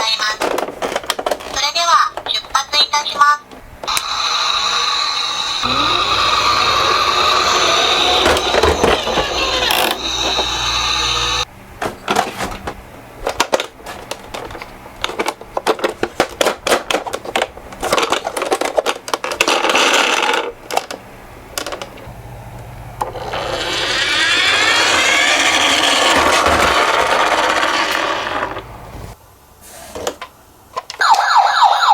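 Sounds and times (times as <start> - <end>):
toy cars rolling down a track: 3.9 - 11.4, 17.4 - 21.0, 23.0 - 28.6
toy cars clattering: 13.3 - 21.0, 23.0 - 28.6.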